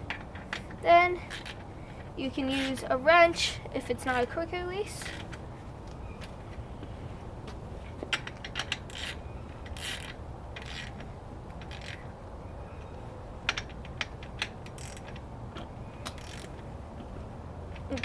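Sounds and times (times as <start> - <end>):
ratchet wrench clicking: 8.1 - 11.0, 11.6 - 12.0, 13.5 - 15.2, 16.0 - 16.6.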